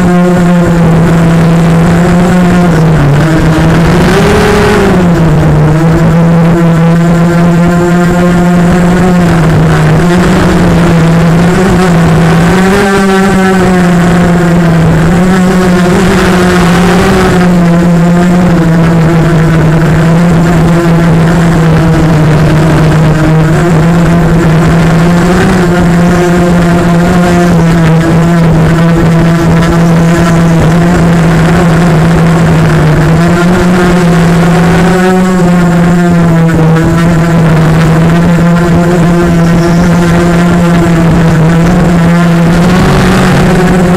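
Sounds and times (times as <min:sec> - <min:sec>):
drone motors whining: 0:00.0 - 0:43.9.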